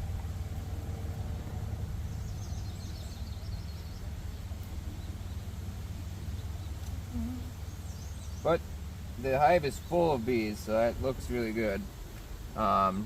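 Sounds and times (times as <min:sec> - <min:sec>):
low outdoor rumble: 0:00.0 - 0:13.0
small bird chirping: 0:02.0 - 0:08.6.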